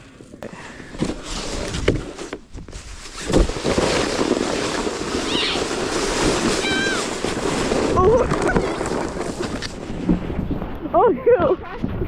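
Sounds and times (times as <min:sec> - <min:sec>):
wind on microphone: 0:01.4 - 0:12.0
sled hissing over snow: 0:02.8 - 0:10.0.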